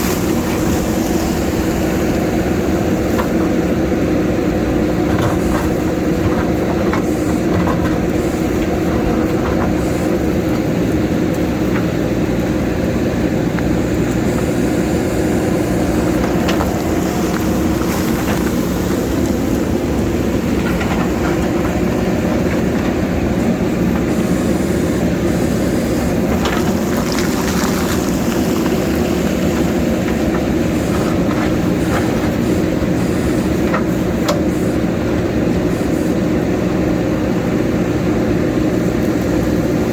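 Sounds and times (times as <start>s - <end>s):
diesel engine running under load: 0.0s - 39.9s
bucket scraping and knocking rock: 15.6s - 23.1s, 25.8s - 32.4s.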